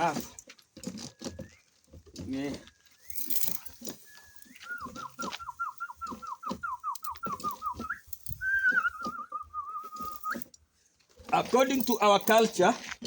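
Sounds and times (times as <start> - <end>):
man whistling: 2.9 - 10.5.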